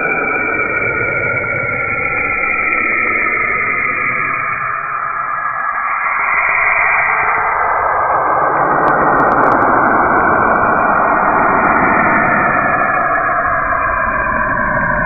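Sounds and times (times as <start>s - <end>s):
dense rushing noise: 3.2s - 15.0s.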